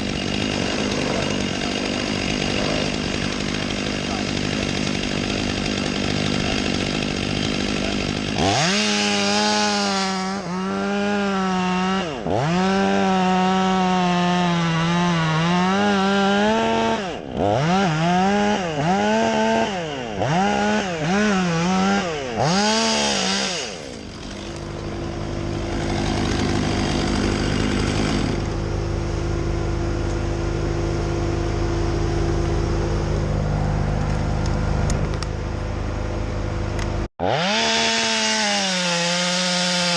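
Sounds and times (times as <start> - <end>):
low machine drone: 0.0 - 12.3, 23.7 - 37.1
chainsaw cutting at high revs: 0.0 - 31.1, 37.2 - 39.9.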